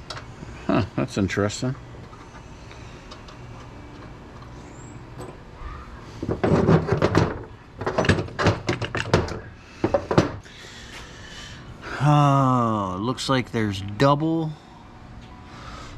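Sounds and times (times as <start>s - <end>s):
heavy metal parts clanking: 6.2s - 10.4s.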